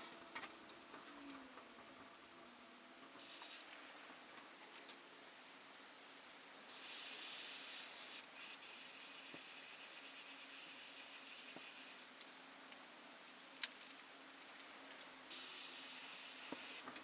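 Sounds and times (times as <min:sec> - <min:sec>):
airbrush spraying hiss: 0:03.2 - 0:03.7, 0:06.7 - 0:12.1, 0:15.3 - 0:17.0.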